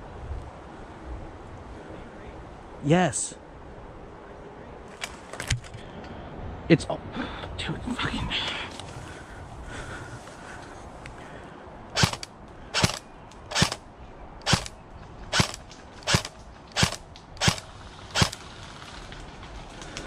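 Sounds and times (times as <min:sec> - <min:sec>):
airsoft gun shots: 0:12.0 - 0:13.8, 0:14.4 - 0:14.7, 0:15.3 - 0:17.6.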